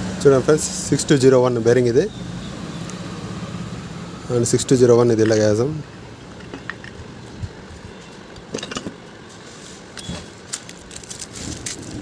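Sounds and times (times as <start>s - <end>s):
metallic clicks of handling parts: 6.4s - 7.1s, 8.1s - 9.1s.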